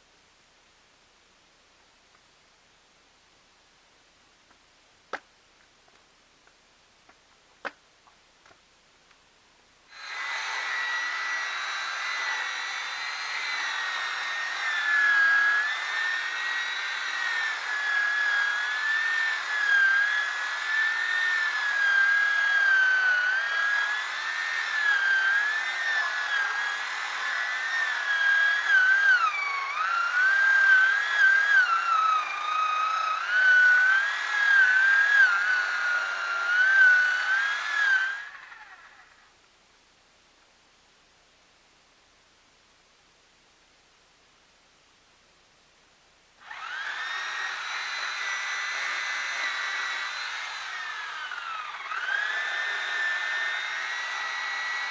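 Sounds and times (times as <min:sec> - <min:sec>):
chainsaw cutting log: 0:09.9 - 0:39.2, 0:46.4 - 0:54.9.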